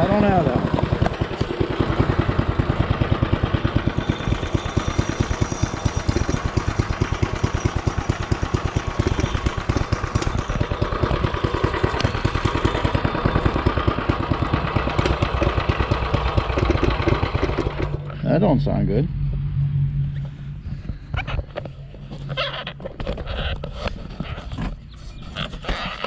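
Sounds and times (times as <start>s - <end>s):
mini bike engine running: 0.0s - 18.4s.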